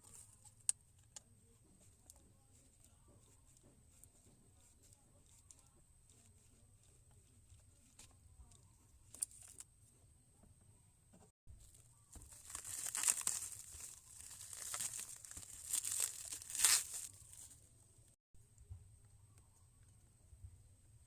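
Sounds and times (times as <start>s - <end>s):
crinkling rustling handling noise: 11.6s - 17.6s.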